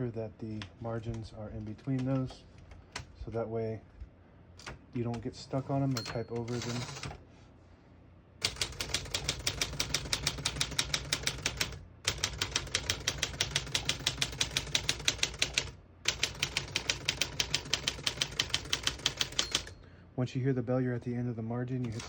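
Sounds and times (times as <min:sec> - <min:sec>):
manual typewriter typing: 0:04.6 - 0:07.2, 0:08.4 - 0:19.8.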